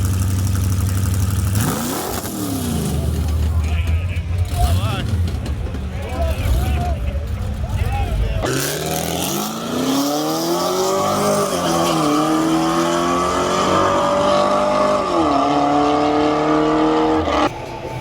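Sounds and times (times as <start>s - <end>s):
car engine accelerating hard: 8.4s - 17.5s.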